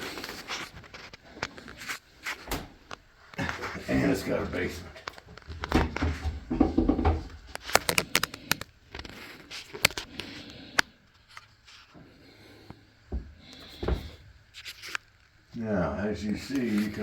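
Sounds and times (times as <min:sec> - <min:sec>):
dull thumps: 0:05.2 - 0:07.7, 0:13.0 - 0:14.4.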